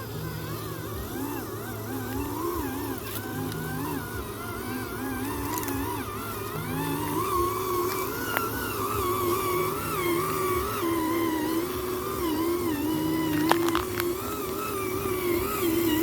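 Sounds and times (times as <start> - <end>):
electric motor whining: 0.0 - 16.0.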